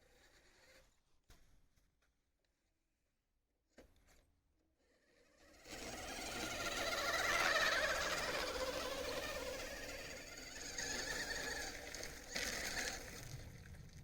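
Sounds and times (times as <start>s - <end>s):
small electric motor whirring: 4.8s - 13.3s.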